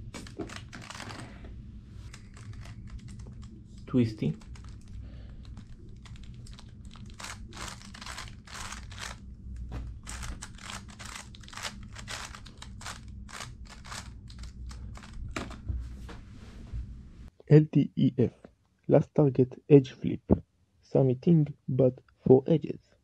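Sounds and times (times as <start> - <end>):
speed cube clicking and rattling: 0.0 - 1.3, 2.1 - 9.3, 10.0 - 15.6
steady low hum: 0.0 - 22.8.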